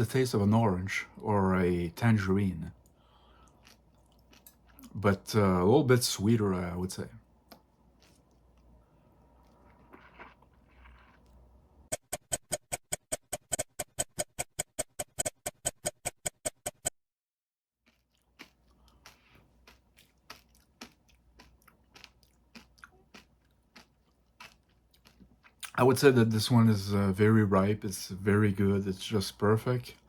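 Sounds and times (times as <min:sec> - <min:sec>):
chewing crunchy seeds: 0:02.7 - 0:05.2, 0:07.5 - 0:11.4, 0:17.9 - 0:25.8.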